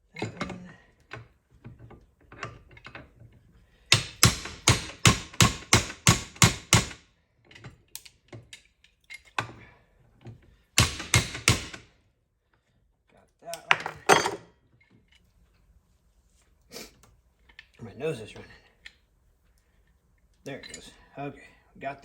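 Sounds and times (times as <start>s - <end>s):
hammer striking steel: 10.8s - 11.8s.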